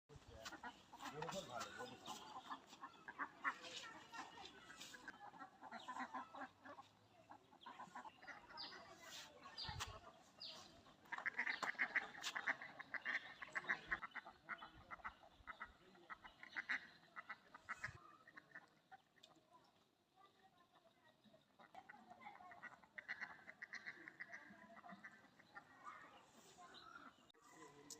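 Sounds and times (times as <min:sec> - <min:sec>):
poultry flock calling: 0:00.2 - 0:18.5.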